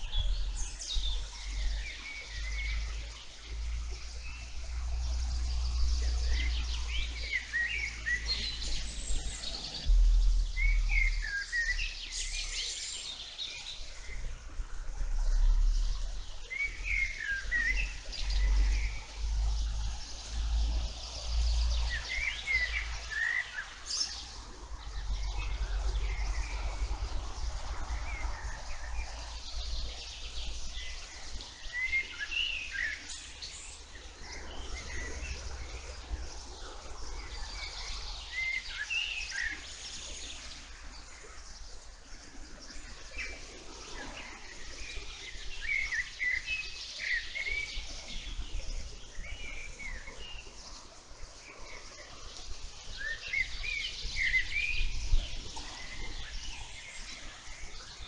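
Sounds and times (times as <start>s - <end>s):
low rumble: 0.0s - 12.8s
songbirds chirping: 0.0s - 58.0s.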